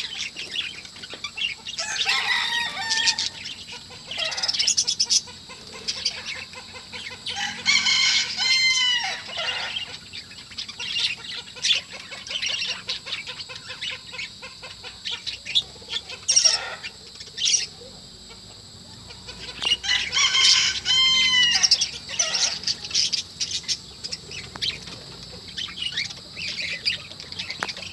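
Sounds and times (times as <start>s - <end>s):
falling bird call: 0.0s - 10.2s, 19.1s - 27.9s
budgerigars chirping: 0.0s - 27.9s.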